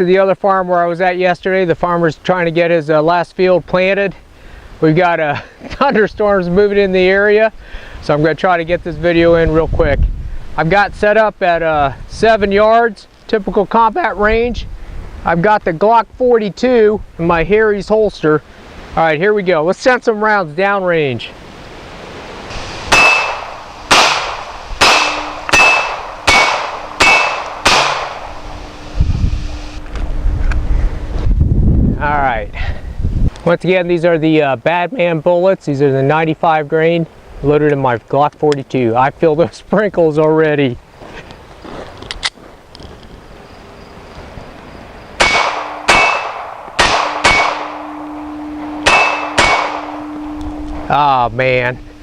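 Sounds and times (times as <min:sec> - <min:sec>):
steady ringing tone: 0:22.8 - 0:29.9, 0:47.0 - 0:52.0
pistol shots: 0:22.9 - 0:28.4, 0:45.2 - 0:50.3
short ringing tone: 0:25.0 - 0:26.0, 0:47.1 - 0:52.0.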